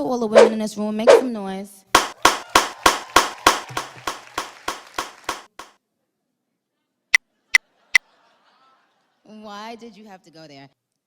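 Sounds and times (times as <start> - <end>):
person clapping: 2.0 - 5.7.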